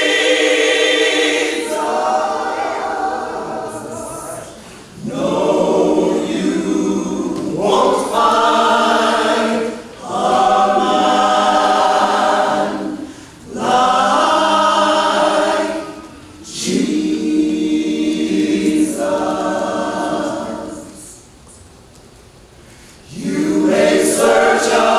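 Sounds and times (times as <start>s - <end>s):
gospel choir singing: 0.0s - 21.3s, 23.0s - 24.9s.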